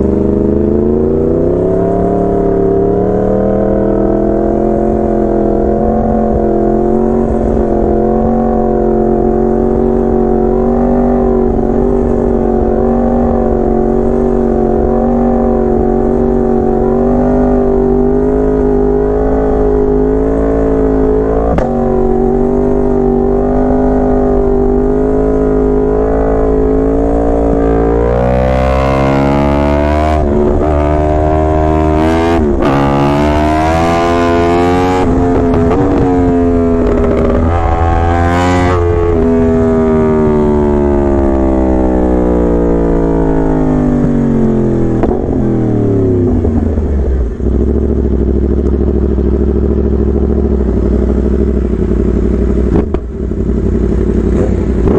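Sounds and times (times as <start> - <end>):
motorcycle engine revving: 0.0 - 54.9
motorcycle engine idling: 46.3 - 54.9.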